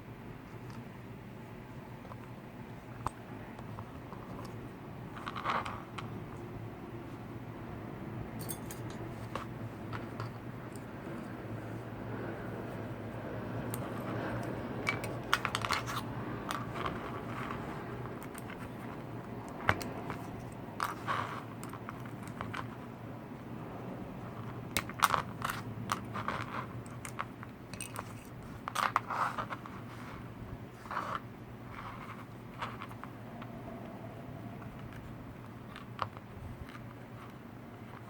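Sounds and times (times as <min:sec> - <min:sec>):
small parts clicking and rattling: 0:08.4 - 0:10.9, 0:13.7 - 0:22.8, 0:24.3 - 0:29.7.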